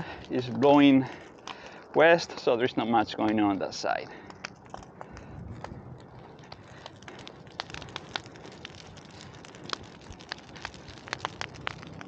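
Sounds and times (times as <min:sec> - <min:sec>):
fire crackling and popping: 0:00.0 - 0:12.0
rush of flame: 0:04.2 - 0:12.0.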